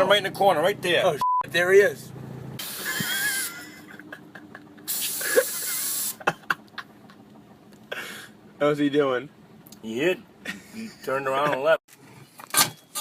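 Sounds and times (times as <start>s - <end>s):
aerosol can spraying: 4.9s - 6.2s.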